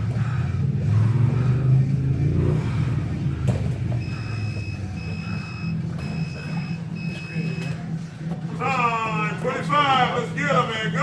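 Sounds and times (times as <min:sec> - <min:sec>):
low steady hum: 0:00.0 - 0:11.0
timer beeps: 0:03.9 - 0:07.9.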